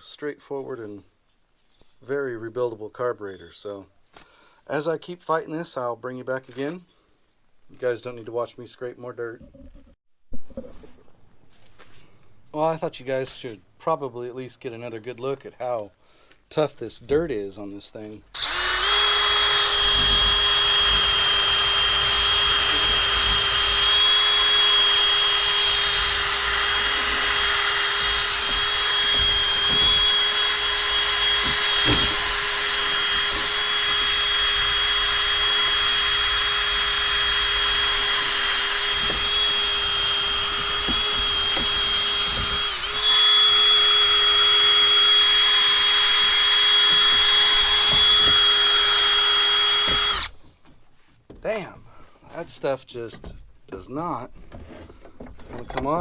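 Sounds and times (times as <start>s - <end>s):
power drill motor whine: 18.4s - 50.3s.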